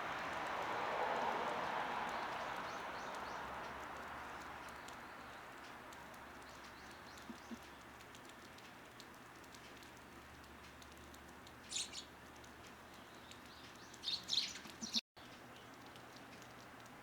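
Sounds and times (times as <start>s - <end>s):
small birds chirping: 2.1s - 9.2s, 10.9s - 16.6s.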